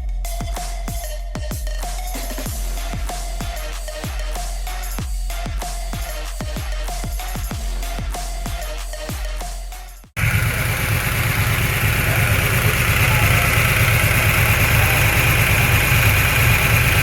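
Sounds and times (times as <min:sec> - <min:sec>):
electronic dance music: 0:00.0 - 0:17.0
engine running with low rumble: 0:10.2 - 0:17.0.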